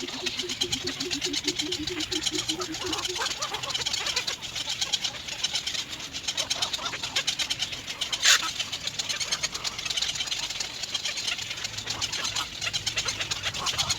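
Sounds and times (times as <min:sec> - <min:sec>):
nestling birds chirping: 0:00.0 - 0:06.3.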